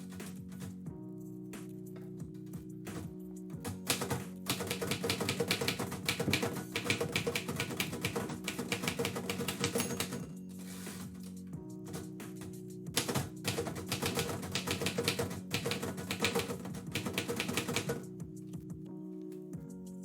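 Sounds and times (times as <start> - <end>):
typewriter keys typing: 0.0 - 0.7, 2.9 - 11.2, 11.8 - 18.1
background music: 0.0 - 20.0.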